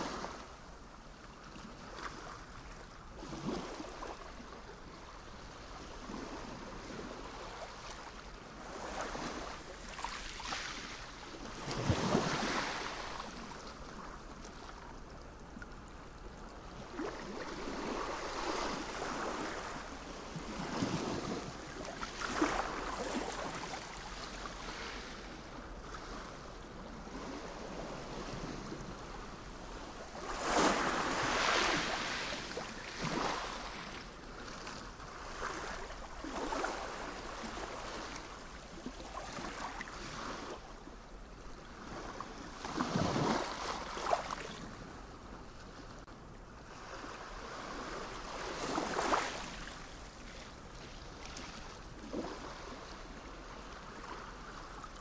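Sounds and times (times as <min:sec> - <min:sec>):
waves washing in: 0:05.7 - 0:14.0, 0:16.7 - 0:41.1, 0:46.7 - 0:53.0.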